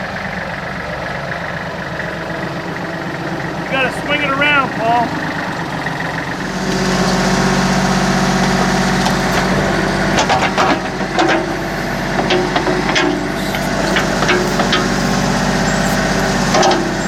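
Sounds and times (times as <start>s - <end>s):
diesel engine under hydraulic load: 0.0s - 17.0s
metal knocks and clanks: 8.6s - 15.8s.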